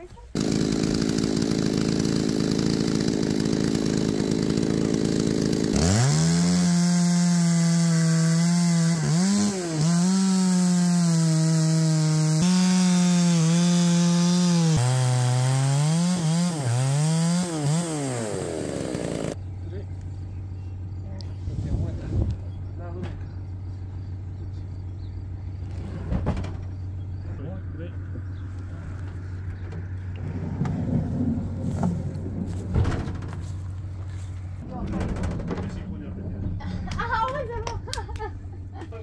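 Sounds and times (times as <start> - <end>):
chainsaw engine revving: 0.3 - 19.4.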